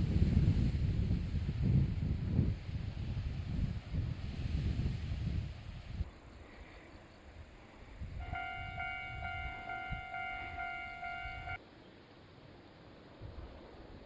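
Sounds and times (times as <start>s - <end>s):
level-crossing warning bell: 8.2s - 11.6s.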